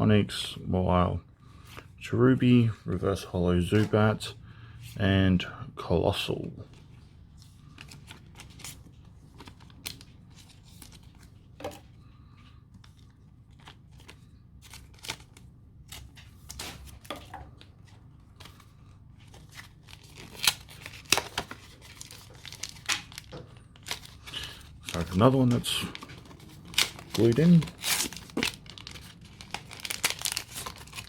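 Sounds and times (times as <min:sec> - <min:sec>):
foil wrapper crinkling and tearing: 0:19.3 - 0:31.0.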